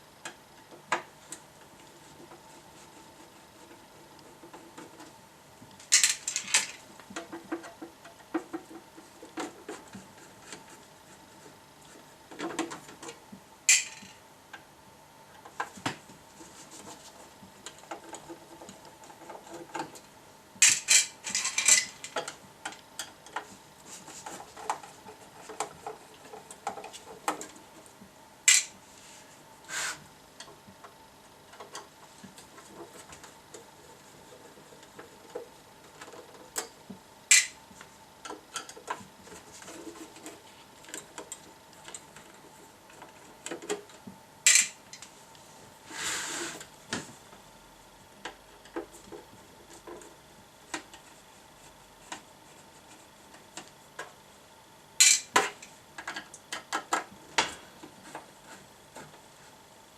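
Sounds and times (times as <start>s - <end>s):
tools and metal parts clinking: 13.7s - 14.2s, 20.6s - 22.3s.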